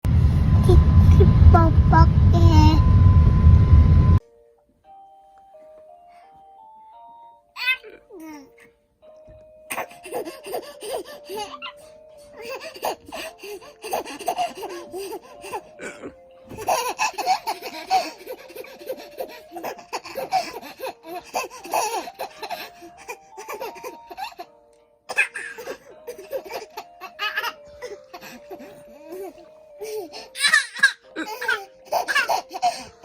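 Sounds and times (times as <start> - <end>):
simple background tune: 0.1 - 33.0
baby laughing: 7.6 - 8.4, 9.7 - 33.0.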